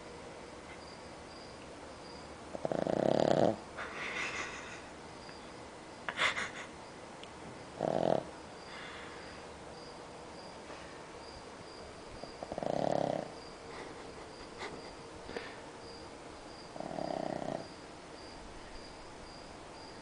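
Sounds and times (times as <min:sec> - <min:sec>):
dog snoring: 0:02.5 - 0:03.6, 0:07.8 - 0:08.4, 0:12.4 - 0:13.4, 0:16.7 - 0:17.8.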